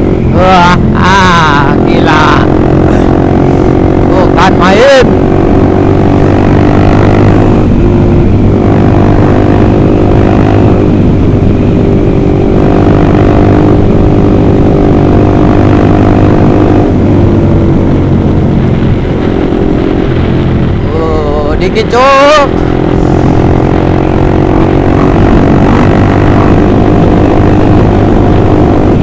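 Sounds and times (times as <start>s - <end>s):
loud motorcycle engine: 0.0s - 29.0s.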